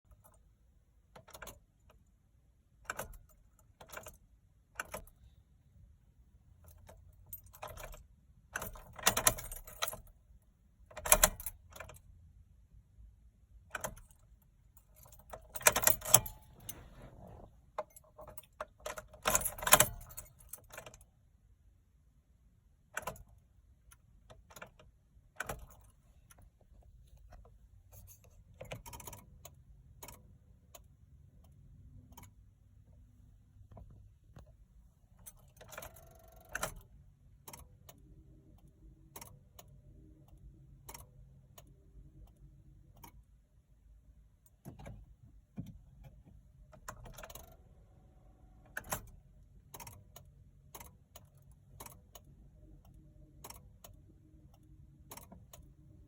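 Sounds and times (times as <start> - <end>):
keys jangling: 14.8 - 18.5.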